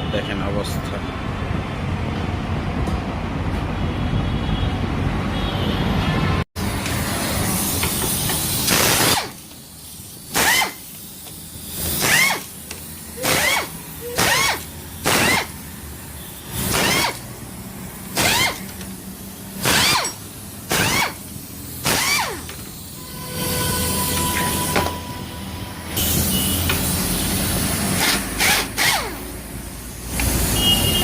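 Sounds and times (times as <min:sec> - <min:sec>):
air gun blasts hissing: 0:06.6 - 0:25.3, 0:25.9 - 0:31.0.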